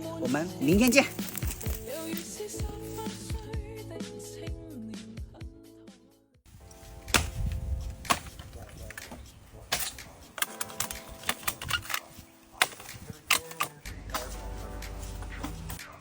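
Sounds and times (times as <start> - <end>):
wooden knocks and cracks: 7.0 - 14.4.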